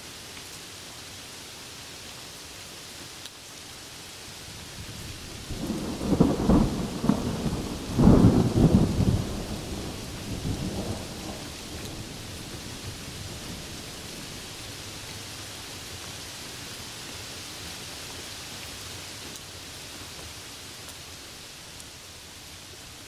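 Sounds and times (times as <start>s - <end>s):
steady rain hiss: 0.0s - 23.0s
thunder rumbling: 4.8s - 15.0s.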